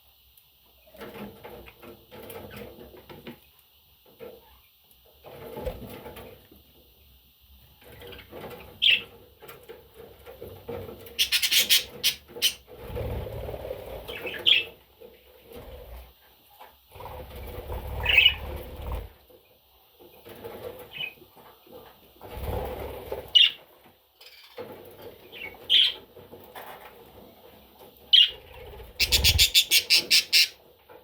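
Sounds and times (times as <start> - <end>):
budgerigar chirps: 11.2 - 12.6, 29.0 - 30.6.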